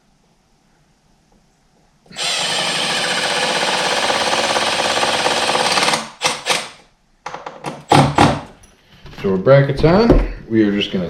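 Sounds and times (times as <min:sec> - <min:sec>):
impact driver hammering a screw: 0:02.1 - 0:06.8.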